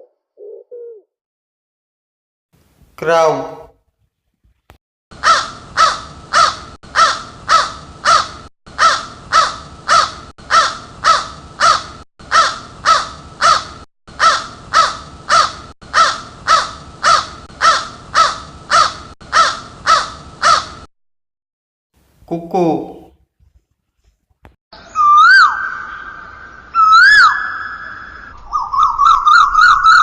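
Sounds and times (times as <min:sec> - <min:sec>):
crow cawing: 0:05.2 - 0:20.9.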